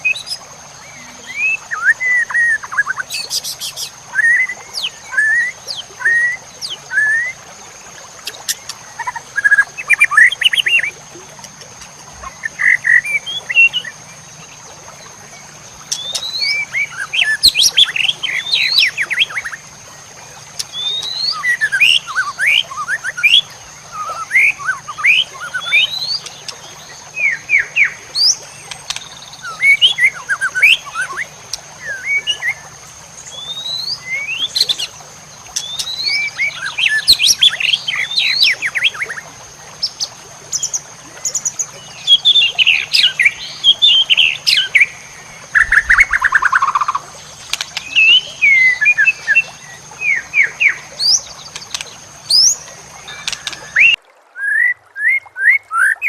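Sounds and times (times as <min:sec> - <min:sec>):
songbird whistles and chirps: 0:00.0 - 0:07.4, 0:15.9 - 0:19.6, 0:20.6 - 0:32.6, 0:39.8 - 0:56.0.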